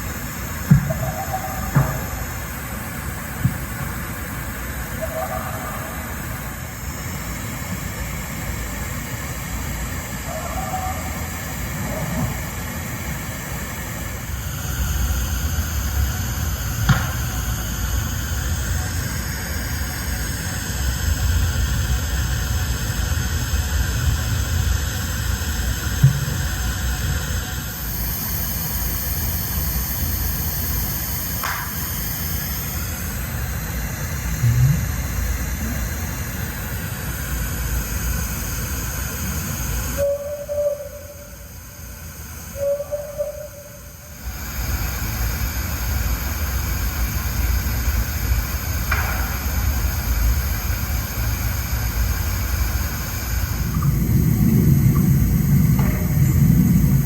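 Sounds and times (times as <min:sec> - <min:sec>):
sharp knocks: 0:00.7 - 0:02.2, 0:16.9 - 0:17.2
dull thump: 0:16.9 - 0:17.3
low rumble: 0:34.2 - 0:35.8, 0:53.6 - 0:57.0.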